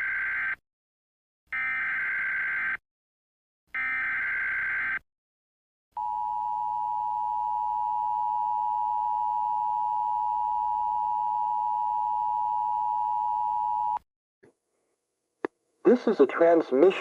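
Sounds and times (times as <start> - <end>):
steady two-tone alarm: 3.8 - 5.0, 6.0 - 14.0.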